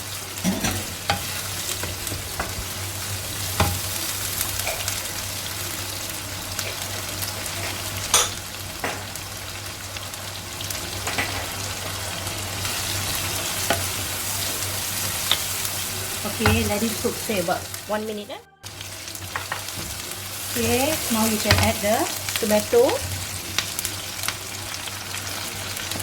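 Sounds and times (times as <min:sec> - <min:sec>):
food sizzling in hot oil: 0:00.0 - 0:26.0
utensil knocking on pan: 0:16.4 - 0:16.8, 0:21.4 - 0:21.8.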